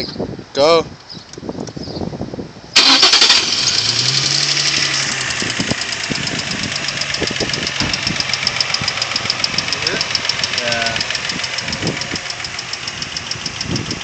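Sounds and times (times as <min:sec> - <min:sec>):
car engine starting and idling: 0:02.8 - 0:14.0
fast engine ticking: 0:02.8 - 0:14.0.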